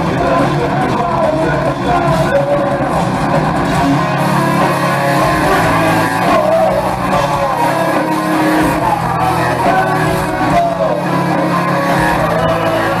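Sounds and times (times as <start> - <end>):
heavy metal band playing live: 0.0 - 13.0
person singing: 0.0 - 13.0.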